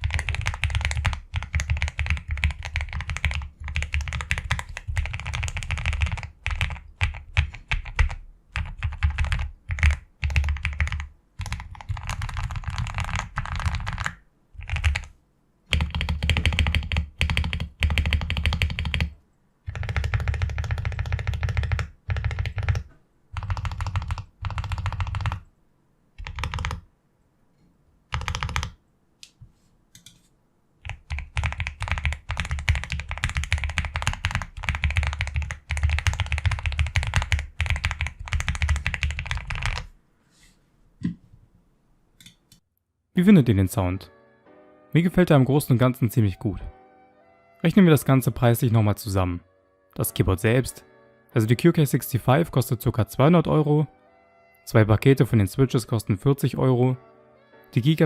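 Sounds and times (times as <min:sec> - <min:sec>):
mechanical keyboard typing: 0:00.0 - 0:15.1, 0:15.7 - 0:19.1, 0:19.7 - 0:25.5, 0:26.2 - 0:26.9, 0:28.1 - 0:28.8, 0:30.8 - 0:39.9.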